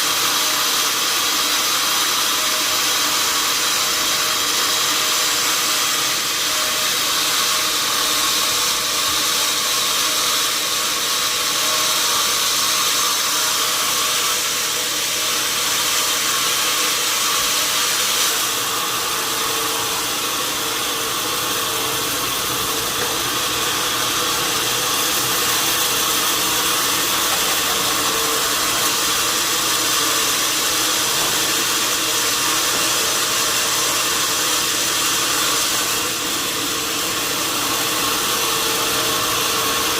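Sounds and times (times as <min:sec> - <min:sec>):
sawmill machinery hiss: 0:00.0 - 0:39.9.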